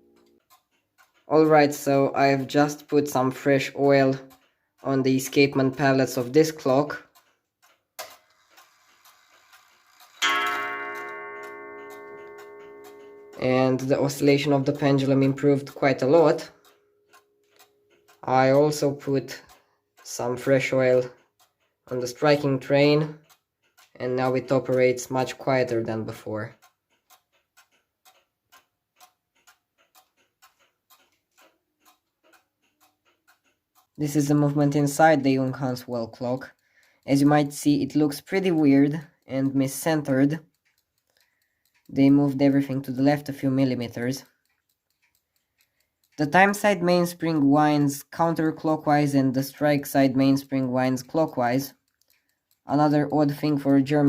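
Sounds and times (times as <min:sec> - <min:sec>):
wall clock ticking faintly: 0:00.0 - 0:54.0
clock gong strike ringing: 0:10.2 - 0:15.2.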